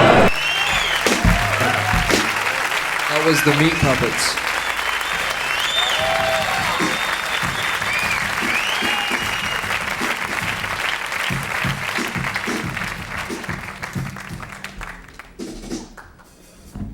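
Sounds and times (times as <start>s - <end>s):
whistles: 0.0s - 12.6s
audience applauding and cheering: 0.0s - 16.1s.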